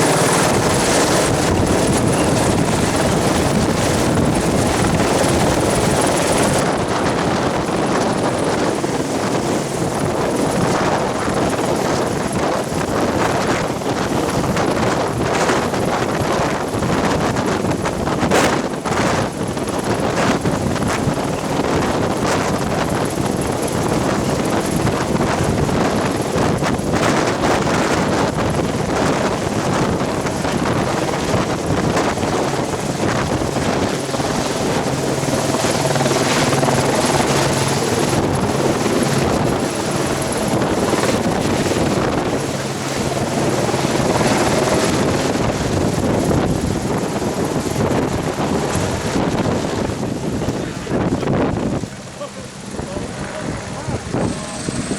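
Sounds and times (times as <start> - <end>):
helicopter rotor and engine: 0.0 - 54.9.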